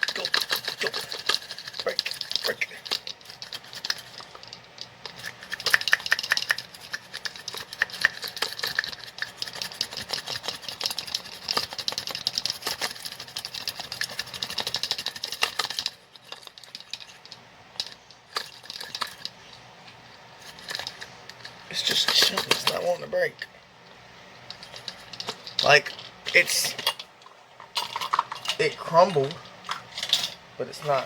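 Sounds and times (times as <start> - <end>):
onion chopper clacking: 0.0 - 19.5, 20.5 - 23.1.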